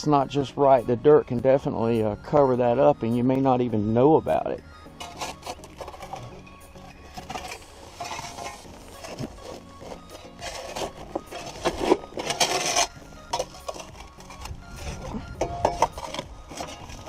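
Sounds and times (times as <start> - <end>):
faint background music: 0.0 - 17.0
hand tool scraping packed dirt: 5.0 - 17.0.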